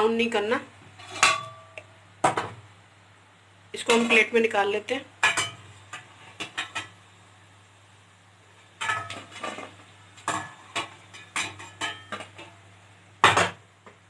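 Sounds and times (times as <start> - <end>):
utensil clinking on pan and plate: 5.2 - 7.0, 8.8 - 12.5.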